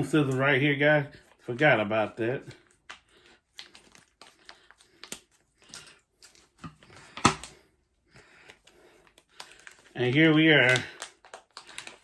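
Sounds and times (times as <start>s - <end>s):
plastic packaging crinkling: 2.6s - 7.6s, 8.4s - 12.0s.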